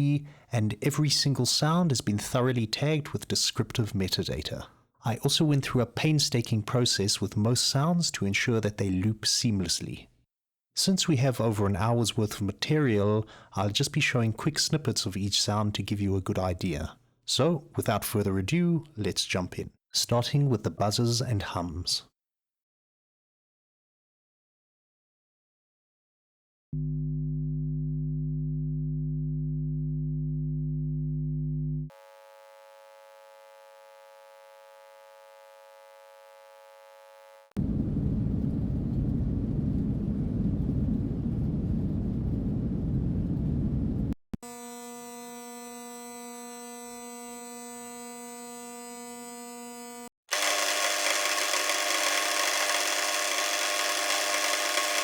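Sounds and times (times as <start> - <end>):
deep steady hum: 26.8 - 31.9
tonal electrical buzz: 26.8 - 37.6, 44.4 - 55.0
thin high buzz: 31.9 - 37.6, 44.4 - 55.0.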